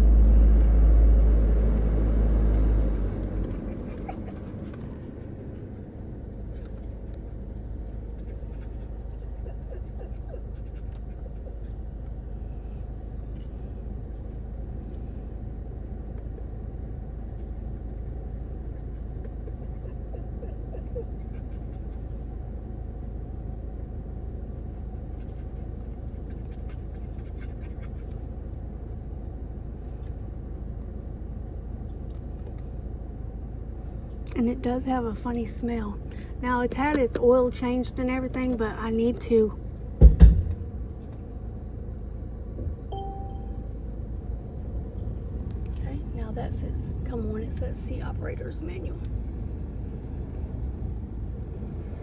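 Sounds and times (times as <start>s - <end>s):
car engine low rumble: 0.0s - 52.0s
faint high chirps: 42.9s - 43.8s.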